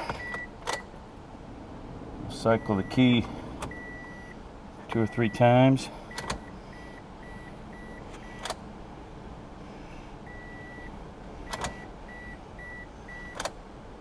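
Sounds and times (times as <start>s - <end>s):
car warning chime beeping: 0.0s - 0.9s, 2.5s - 4.4s, 5.0s - 8.5s, 10.3s - 13.5s
ignition key clicking: 6.2s - 6.4s, 8.4s - 8.6s, 11.5s - 11.8s, 13.3s - 13.6s.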